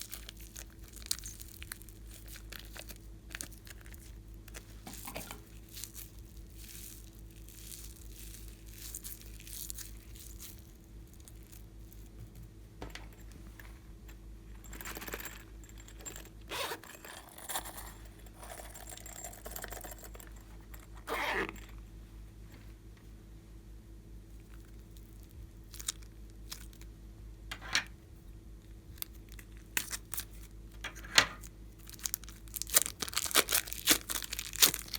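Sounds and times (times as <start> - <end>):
slime tearing and crackling: 5.6 - 11.5, 31.8 - 34.9.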